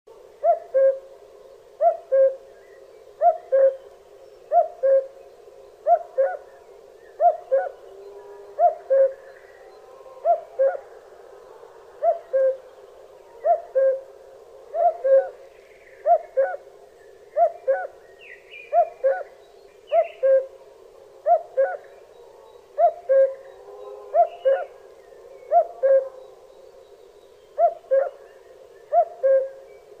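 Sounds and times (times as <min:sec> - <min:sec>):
cuckoo calling: 0:00.4 - 0:01.1, 0:01.8 - 0:02.6, 0:03.2 - 0:06.6, 0:07.2 - 0:07.8, 0:08.6 - 0:09.4, 0:10.2 - 0:10.8, 0:12.0 - 0:12.7, 0:13.4 - 0:14.1, 0:14.7 - 0:15.4, 0:16.0 - 0:16.7, 0:17.4 - 0:20.6, 0:21.2 - 0:24.8, 0:25.4 - 0:26.3, 0:27.6 - 0:28.2, 0:28.8 - 0:29.9.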